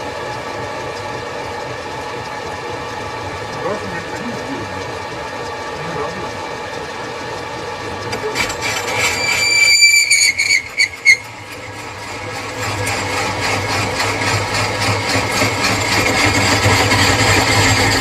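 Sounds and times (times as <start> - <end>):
lathe cutting steel: 1.9 - 18.0
cutting tool squeal: 8.1 - 18.0.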